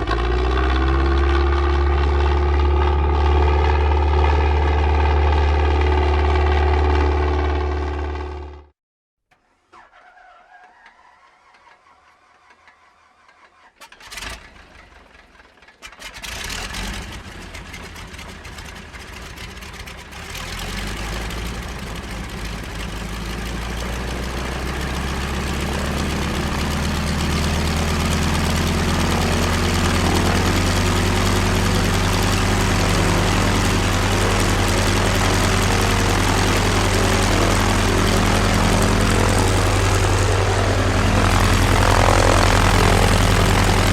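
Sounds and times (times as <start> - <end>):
propeller plane engine starting: 0.0 - 8.7, 9.8 - 43.9.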